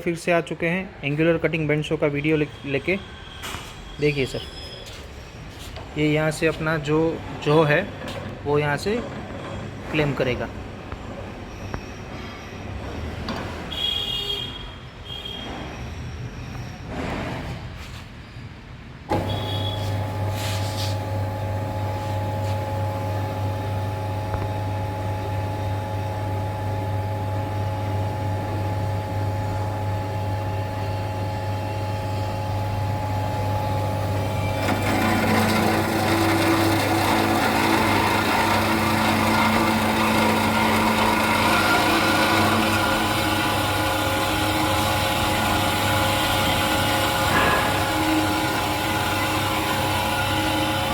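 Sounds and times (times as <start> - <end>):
band saw motor humming: 19.2 - 50.9
saw blade rasping into metal: 34.6 - 44.7.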